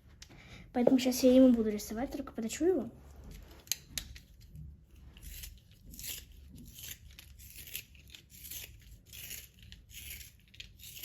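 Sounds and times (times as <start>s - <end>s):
pencil sharpener rasping: 5.2s - 11.0s.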